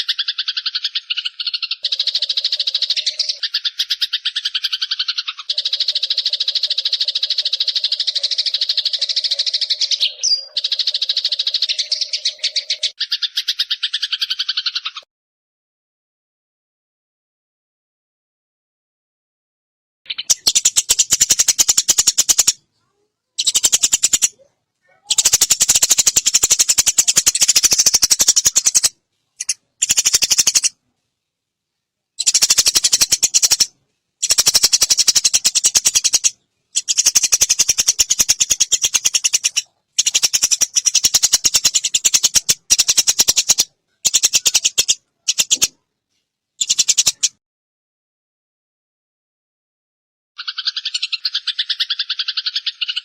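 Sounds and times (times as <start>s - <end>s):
sparrow chattering calls: 0.0s - 15.0s, 20.1s - 22.6s, 23.4s - 30.8s, 32.2s - 45.8s, 46.6s - 47.4s, 50.4s - 53.0s.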